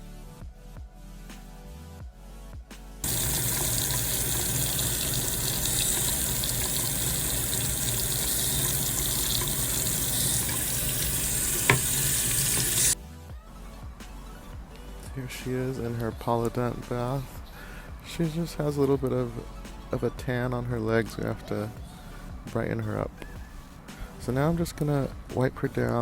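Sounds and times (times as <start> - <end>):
tap water running into sink: 3.0 - 13.0.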